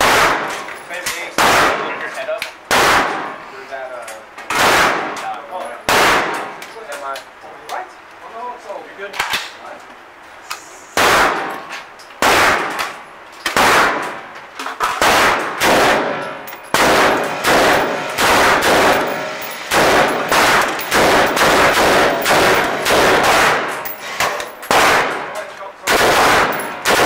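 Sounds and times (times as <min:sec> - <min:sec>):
gunshots echoing in a hall: 0:00.0 - 0:00.6, 0:01.4 - 0:01.9, 0:02.7 - 0:03.4, 0:04.5 - 0:05.2, 0:05.9 - 0:06.6, 0:11.0 - 0:11.6, 0:12.2 - 0:14.3, 0:15.0 - 0:27.0
machine gun firing bursts: 0:15.0 - 0:27.0.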